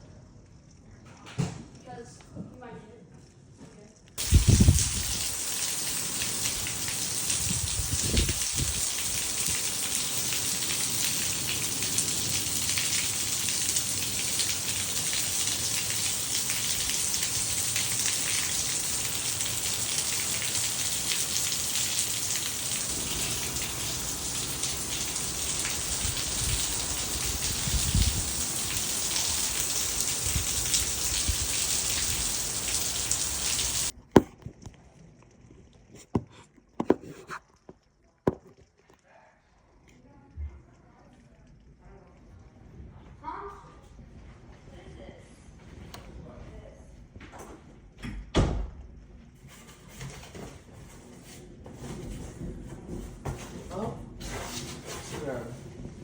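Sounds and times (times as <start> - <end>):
heavy rain: 4.2 - 34.0.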